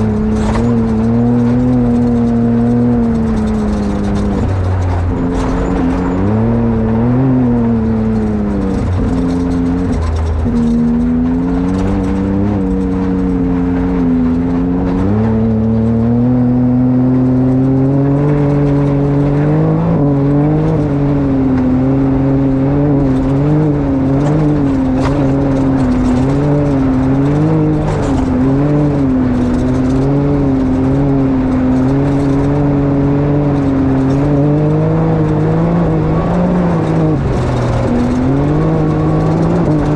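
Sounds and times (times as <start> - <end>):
engine running at low revs: 0.0 - 39.9.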